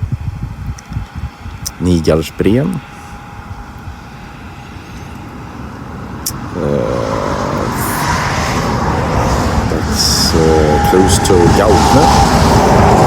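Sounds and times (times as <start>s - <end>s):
motor vehicle approaching: 2.9s - 13.0s.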